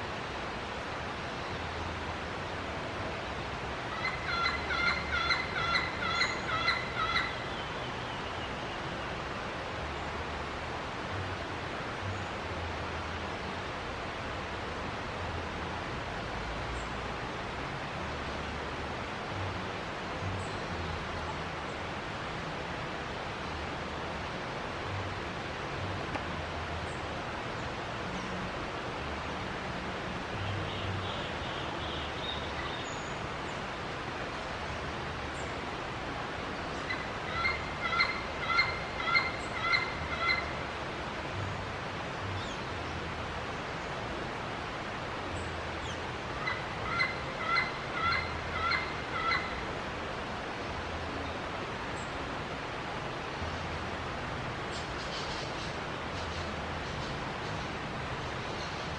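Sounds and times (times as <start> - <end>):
steady background hiss: 0.0 - 58.9
bird calling clear notes: 3.9 - 8.3, 36.7 - 40.6, 46.4 - 49.6.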